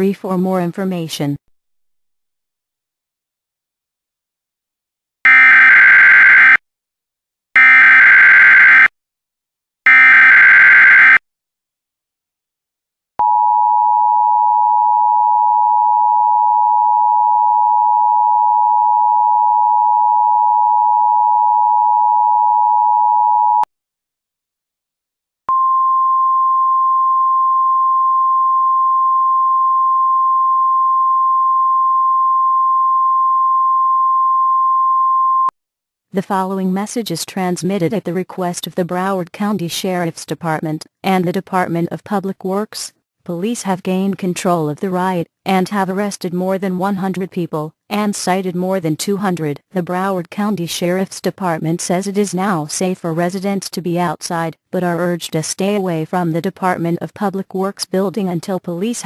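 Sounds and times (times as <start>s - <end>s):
steady single tone: 13.2s - 23.7s, 25.5s - 35.5s.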